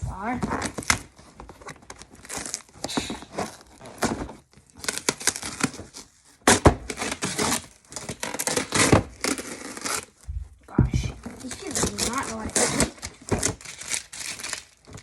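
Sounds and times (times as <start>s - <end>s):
cardboard box tearing open: 0.4s - 10.2s, 11.2s - 15.0s
short knocks: 10.3s - 11.3s.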